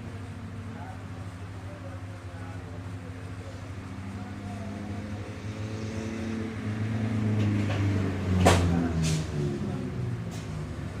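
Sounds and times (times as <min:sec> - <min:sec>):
vehicle engine running: 0:00.0 - 0:11.0
sharp knocks: 0:07.4 - 0:08.8.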